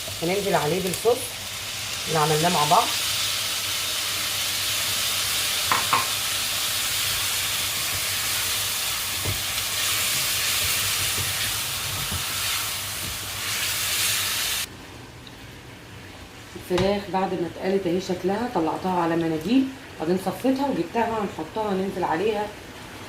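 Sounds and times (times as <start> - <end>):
vegetables sizzling in a hot pan: 0.0 - 14.7.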